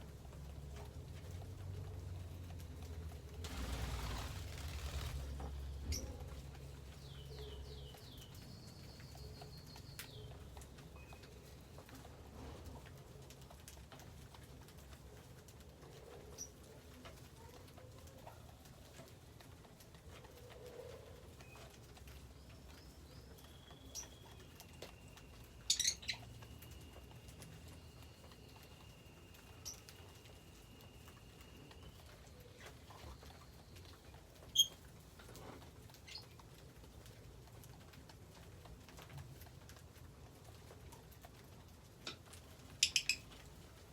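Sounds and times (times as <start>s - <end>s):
lovebirds chirping: 3.5s - 11.7s, 22.2s - 34.9s, 42.7s - 43.4s.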